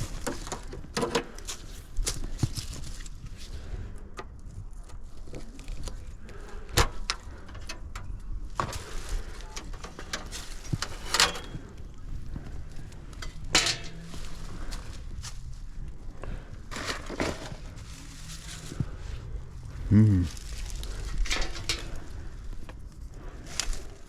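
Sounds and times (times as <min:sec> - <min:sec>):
steady low hum: 0:03.2 - 0:24.0.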